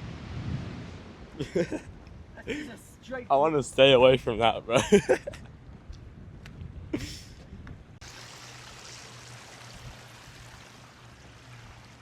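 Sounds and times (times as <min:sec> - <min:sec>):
wind rumbling on microphone: 0:00.0 - 0:08.0
flowing water rushing: 0:08.0 - 0:12.0.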